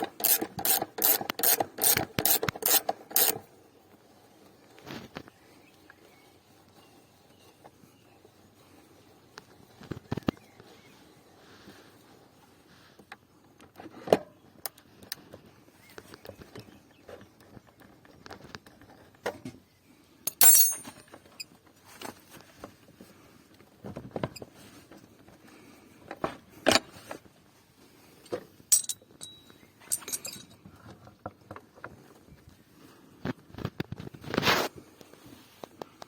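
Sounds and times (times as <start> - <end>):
metallic clinks of tools and parts: 20.3 - 21.5, 28.2 - 30.6.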